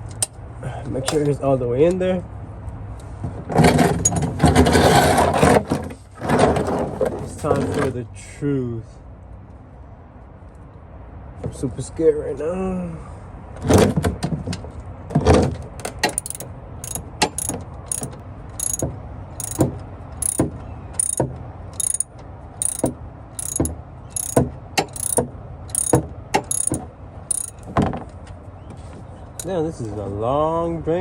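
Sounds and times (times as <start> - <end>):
socket ratchet clicking: 16.0 - 27.7
heavy knocks: 22.6 - 27.9.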